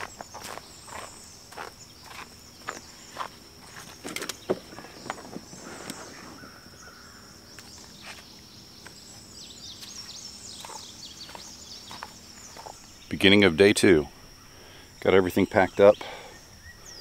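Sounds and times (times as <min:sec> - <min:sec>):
footsteps on ground: 0:00.0 - 0:06.5, 0:07.5 - 0:13.0
birds chirping: 0:00.0 - 0:17.0
steady high-pitched hum: 0:00.0 - 0:17.0.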